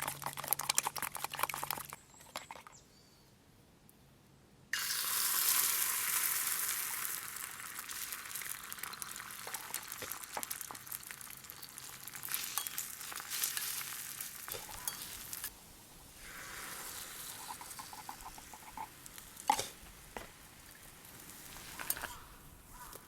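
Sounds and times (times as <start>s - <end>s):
food sizzling on a griddle: 4.8s - 22.9s.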